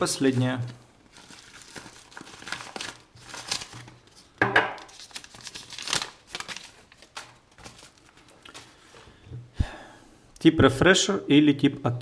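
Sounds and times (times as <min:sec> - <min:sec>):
packaging crinkling and tearing: 0:00.2 - 0:08.8.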